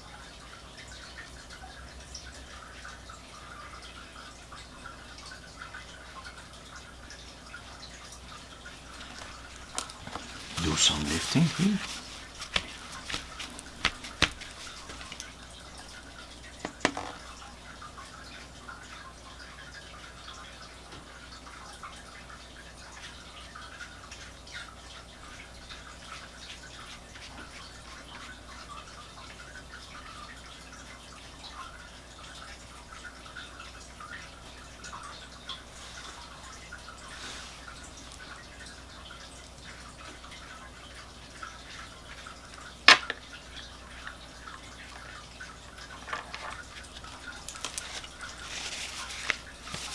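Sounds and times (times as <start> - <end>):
brush strokes on paper: 10.0 - 15.2.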